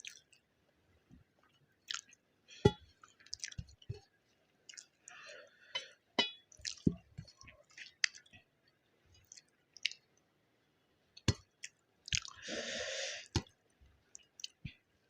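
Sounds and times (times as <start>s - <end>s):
wet chewing with smacks: 0.0s - 0.4s, 1.9s - 2.2s, 3.1s - 4.1s, 4.7s - 5.2s, 6.5s - 8.4s, 9.2s - 10.1s, 11.3s - 12.4s, 14.1s - 14.8s
breathy rush: 12.4s - 13.3s.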